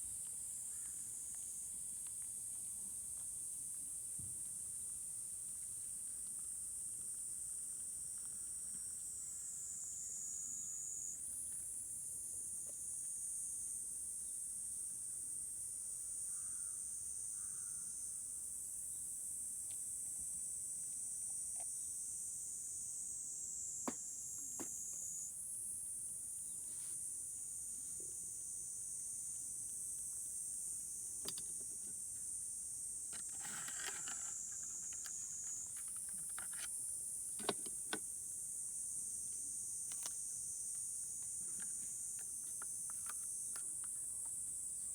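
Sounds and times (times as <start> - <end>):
high-pitched insect chorus: 4.8 - 44.9
brief rustle: 33.1 - 36.7.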